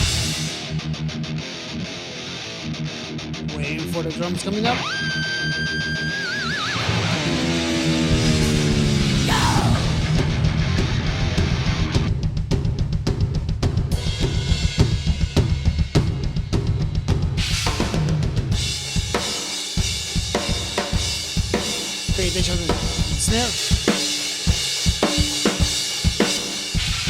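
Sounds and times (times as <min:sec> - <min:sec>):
fast drum kit: 0:00.0 - 0:00.8, 0:07.1 - 0:27.0
low guitar and bass: 0:00.0 - 0:18.7
falling pitch slide: 0:04.8 - 0:10.3.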